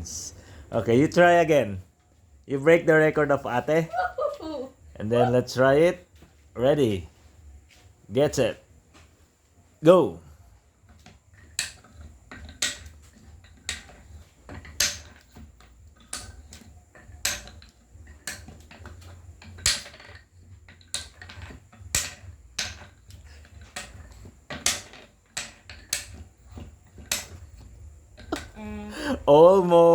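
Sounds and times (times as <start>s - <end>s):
discs clacking on pegs: 10.9s - 28.6s.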